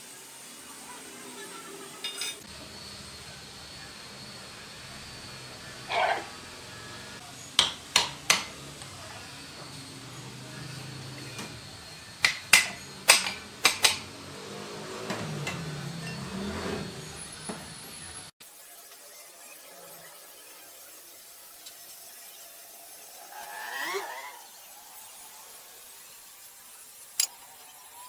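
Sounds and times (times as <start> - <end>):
hammer striking metal: 7.5 - 8.6, 12.2 - 14.1.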